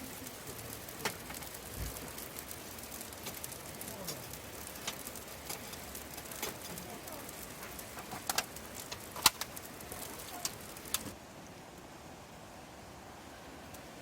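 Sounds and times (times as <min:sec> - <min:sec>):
campfire crackling and popping: 0:00.0 - 0:11.2.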